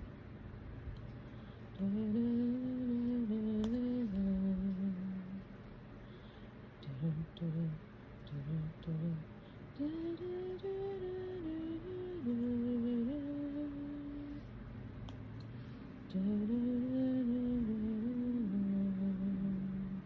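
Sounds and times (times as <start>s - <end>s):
woman humming: 1.8s - 5.5s, 6.8s - 14.5s, 16.1s - 20.0s.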